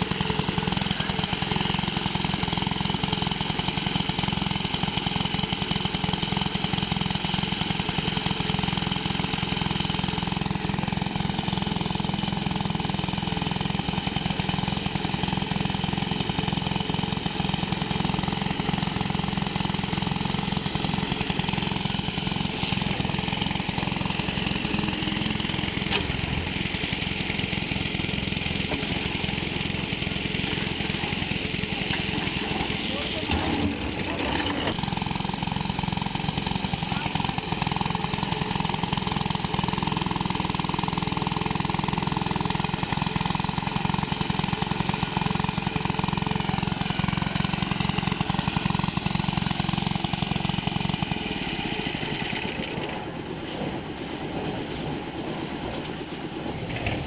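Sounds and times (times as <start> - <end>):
engine running with pulsing beat: 0.0 - 57.0.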